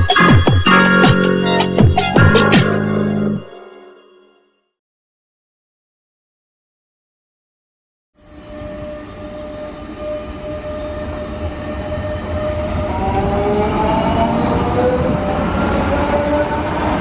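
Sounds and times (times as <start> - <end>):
electric train traction whine: 8.2 - 17.0.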